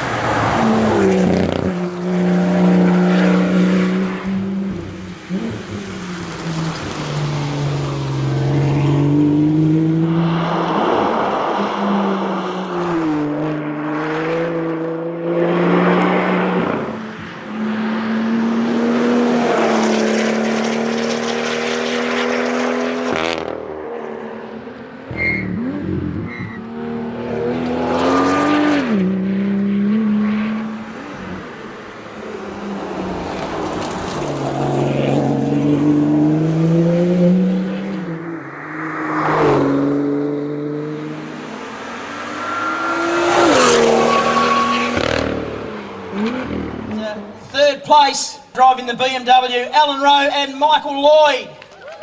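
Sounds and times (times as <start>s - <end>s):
car engine revving hard: 0.0s - 6.6s, 17.6s - 24.3s, 25.1s - 31.5s, 34.5s - 47.4s.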